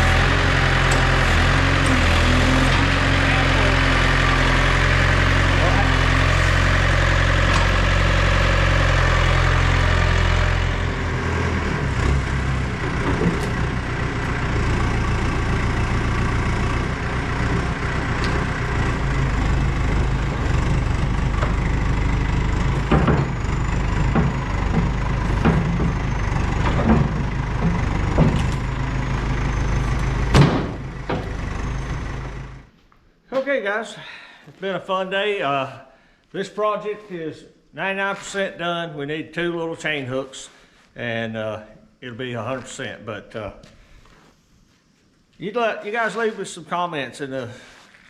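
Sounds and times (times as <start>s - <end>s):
engine running: 0.0s - 32.8s
knocks and clanks: 0.1s - 8.1s, 11.9s - 14.7s, 17.4s - 32.6s.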